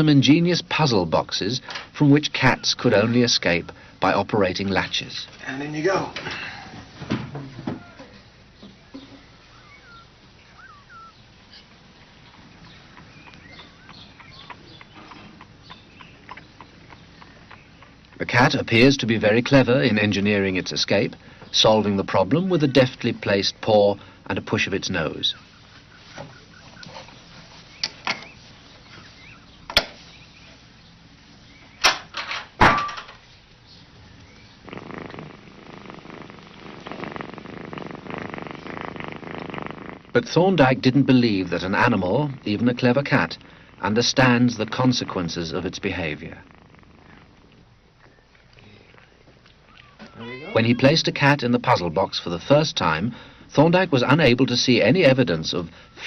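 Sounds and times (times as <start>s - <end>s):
cat chirping: 9.3s - 18.3s, 34.4s - 40.1s, 46.4s - 48.4s, 49.6s - 51.0s.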